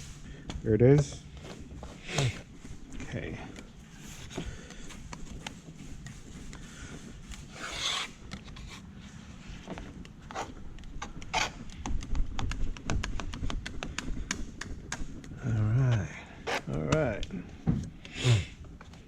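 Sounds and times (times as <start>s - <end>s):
short hissy rustle: 4.9s - 8.2s.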